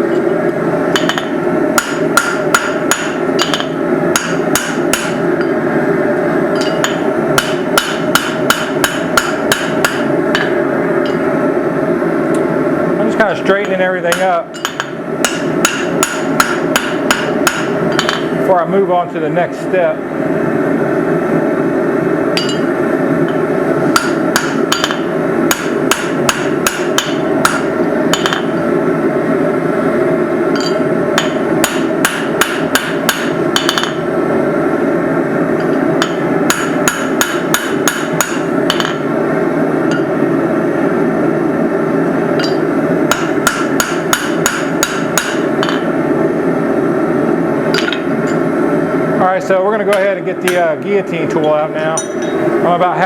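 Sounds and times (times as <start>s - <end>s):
steady background noise: 0.0s - 53.0s
hammer striking hot steel: 0.9s - 5.6s, 6.5s - 11.3s, 13.6s - 18.4s, 22.4s - 28.7s, 30.5s - 34.1s, 35.6s - 39.1s, 39.9s - 40.2s, 42.4s - 46.0s, 47.7s - 48.5s, 49.9s - 52.5s.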